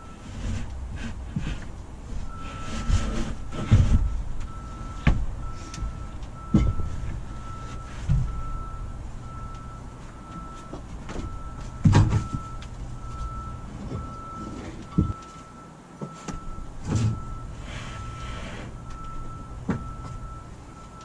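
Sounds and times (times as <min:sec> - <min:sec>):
heavy thumps and knocks: 0:02.8 - 0:08.8, 0:10.2 - 0:15.3, 0:18.8 - 0:20.4.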